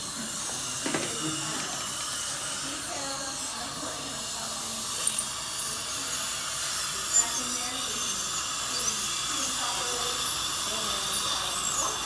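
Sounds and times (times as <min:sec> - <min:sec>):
dental equipment hissing: 0:00.0 - 0:12.0
faint murmured voices: 0:00.0 - 0:12.0.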